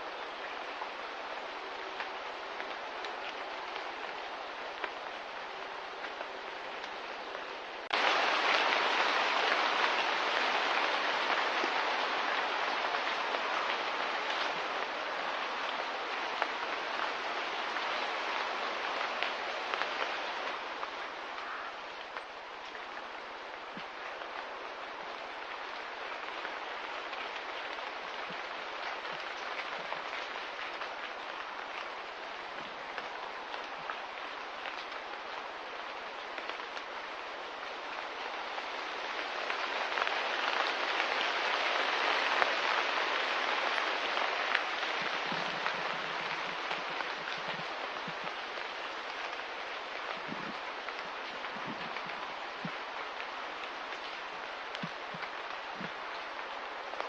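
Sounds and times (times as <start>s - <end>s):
rain-like hiss with patter: 0.0s - 57.0s.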